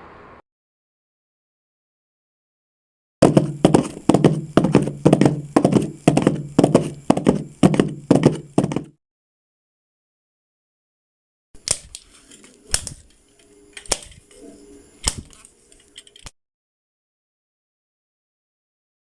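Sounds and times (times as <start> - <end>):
horse hooves clip-clopping: 3.2 - 9.0.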